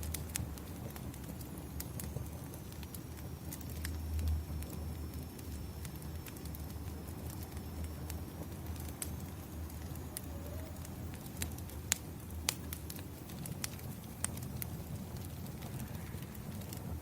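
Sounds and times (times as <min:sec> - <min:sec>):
sharp fire pops: 0:00.0 - 0:04.8, 0:11.1 - 0:17.0
wood fire crackling: 0:00.0 - 0:17.0.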